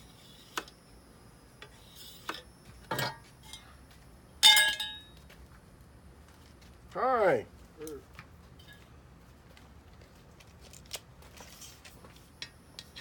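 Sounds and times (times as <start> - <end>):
ringing metallic clang: 4.4 - 5.2.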